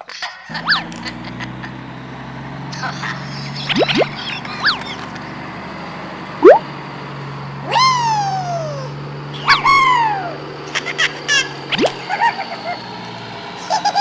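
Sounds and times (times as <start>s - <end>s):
short high chirps: 6.4s - 6.7s.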